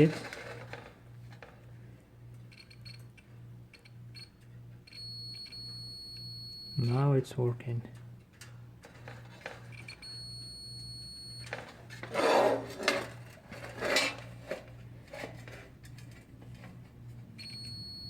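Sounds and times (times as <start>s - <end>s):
multimeter continuity beep: 2.5s - 3.1s, 3.7s - 7.0s, 9.7s - 11.6s, 17.4s - 18.0s.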